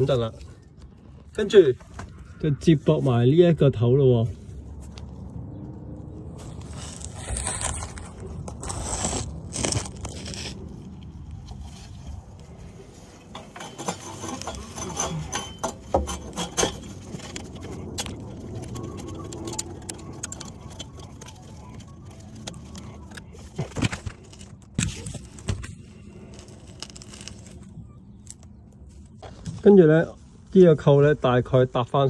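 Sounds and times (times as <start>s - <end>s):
metal exhaust parts clinking: 12.9s - 24.8s.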